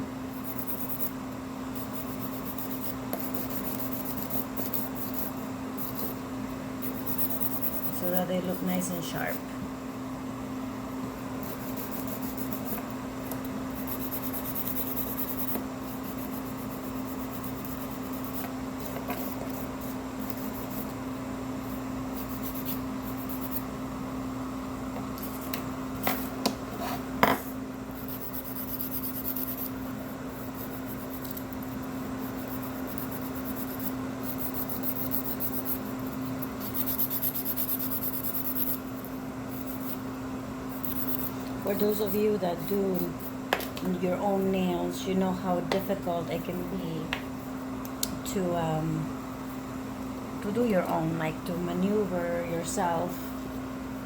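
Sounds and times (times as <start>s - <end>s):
steady low hum: 0.0s - 54.0s
nail file rubbing fingernails: 0.4s - 1.2s, 1.8s - 6.2s, 6.8s - 8.8s, 11.4s - 21.0s, 21.7s - 23.7s, 28.0s - 40.0s, 40.7s - 43.3s.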